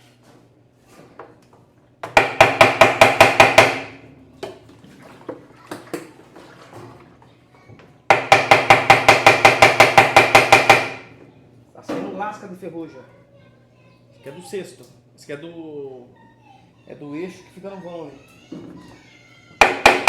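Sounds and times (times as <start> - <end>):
hammer striking metal: 2.2 - 4.0, 8.1 - 11.1.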